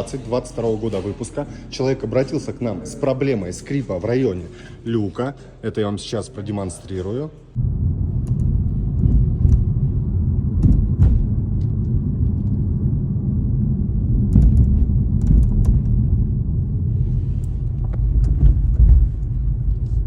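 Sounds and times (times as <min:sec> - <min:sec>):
car road and engine rumble: 0:07.6 - 0:20.0.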